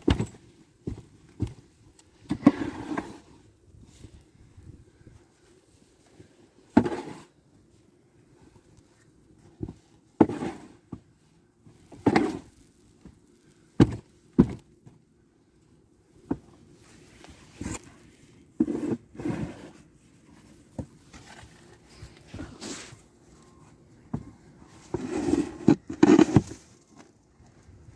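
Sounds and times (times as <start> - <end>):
snow shovel scraping and thumping: 0.0 - 3.4, 6.7 - 7.4, 9.6 - 11.0, 11.9 - 12.7, 16.3 - 17.9, 18.6 - 19.9, 20.8 - 23.0, 24.2 - 26.7.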